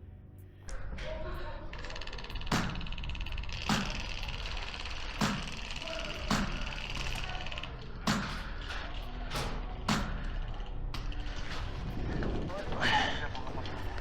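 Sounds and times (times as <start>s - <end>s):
fine rapid rattle: 1.6s - 12.8s.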